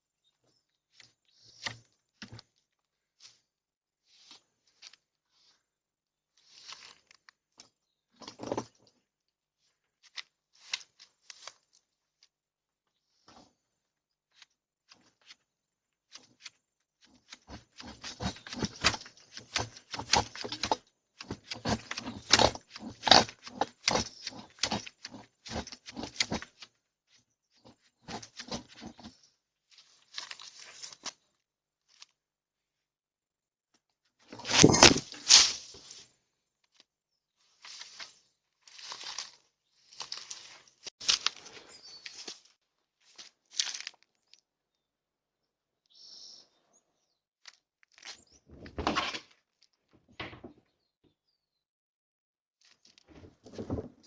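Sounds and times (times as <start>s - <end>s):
branches and leaves rustling and snapping: 6.4s - 8.8s, 10.0s - 11.8s, 16.1s - 26.7s, 28.1s - 31.3s, 34.4s - 36.1s, 37.6s - 44.4s.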